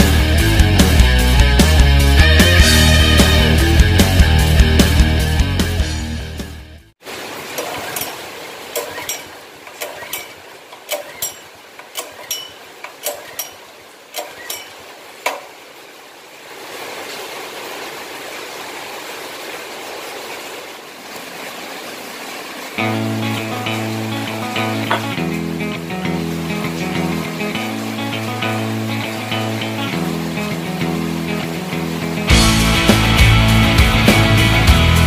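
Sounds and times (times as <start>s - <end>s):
metal clinks and knocks: 7.6s - 8.2s, 8.8s - 15.5s.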